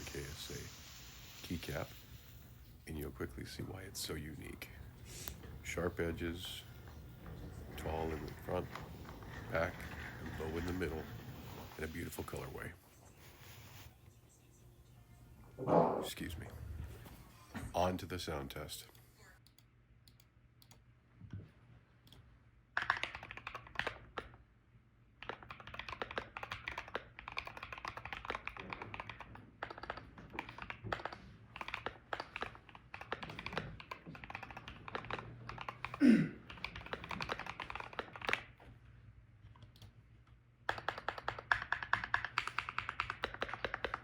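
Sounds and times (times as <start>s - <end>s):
mechanical keyboard typing: 22.8s - 24.3s, 25.2s - 38.5s, 40.7s - 44.0s.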